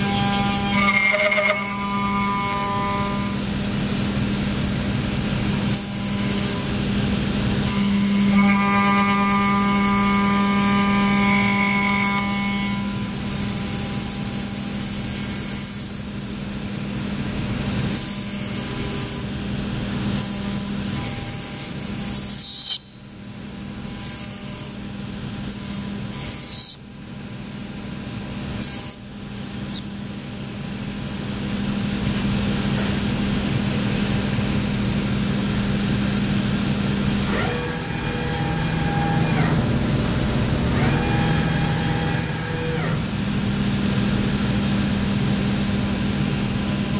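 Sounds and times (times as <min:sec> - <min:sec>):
milling machine cutting: 0:00.0 - 0:15.9, 0:34.6 - 0:45.5.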